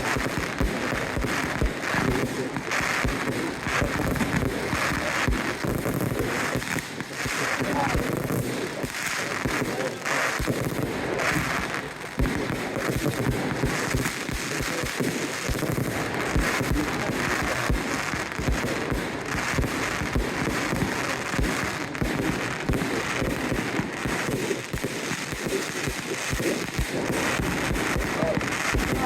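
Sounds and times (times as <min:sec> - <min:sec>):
fireworks booming: 0:00.0 - 0:29.0
fireworks crackling: 0:00.0 - 0:29.0.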